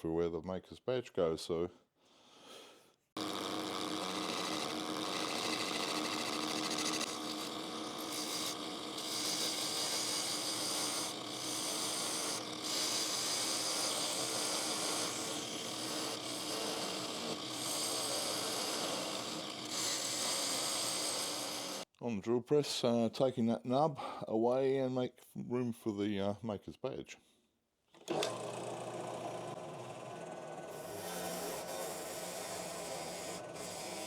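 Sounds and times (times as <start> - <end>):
drill press cutting wood: 3.2 - 21.9, 28.0 - 34.0.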